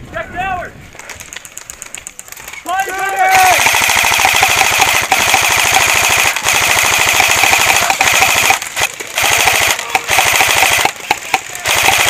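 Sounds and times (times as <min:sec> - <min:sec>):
airsoft gun firing full-auto: 0:03.4 - 0:12.0.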